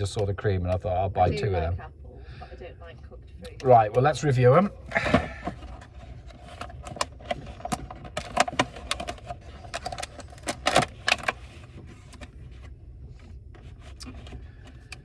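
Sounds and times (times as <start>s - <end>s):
plastic box clicks and crackles: 6.5s - 11.4s.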